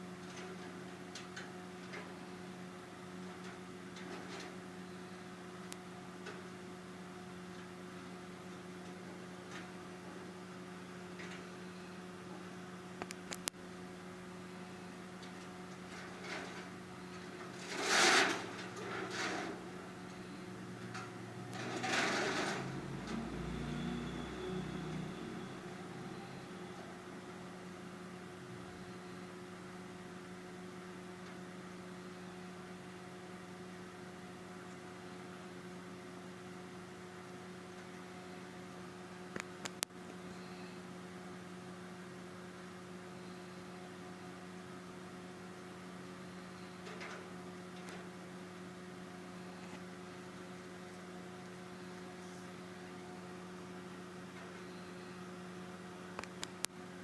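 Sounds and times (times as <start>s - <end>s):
steady low hum: 8.8s - 32.5s, 39.4s - 57.0s.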